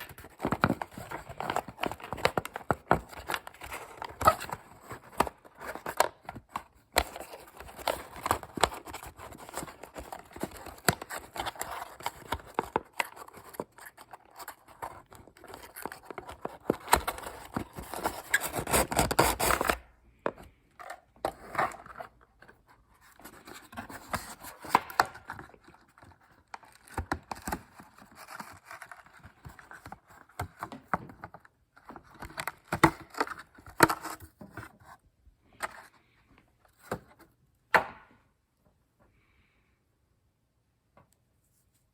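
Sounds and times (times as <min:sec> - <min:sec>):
cardboard and plastic packaging scraping: 0:00.0 - 0:35.0.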